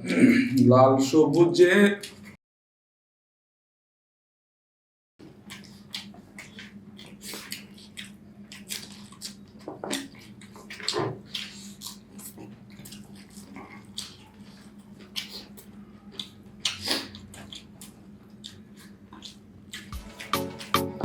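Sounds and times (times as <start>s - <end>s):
wet chewing and mouth smacking: 5.2s - 20.9s.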